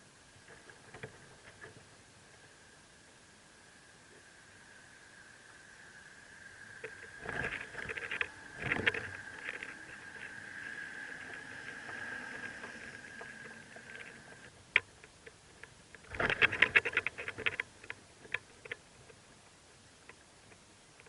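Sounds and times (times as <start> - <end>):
nestlings begging: 4.0 - 14.5.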